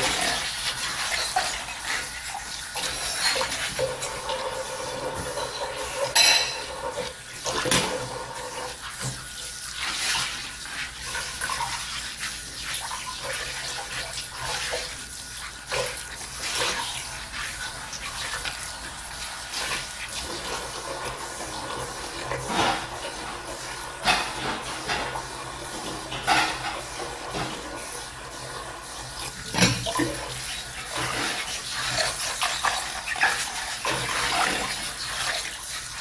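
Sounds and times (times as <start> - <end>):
water running and splashing: 0.0 - 36.0
dishes clinking: 5.3 - 6.8, 24.0 - 27.6.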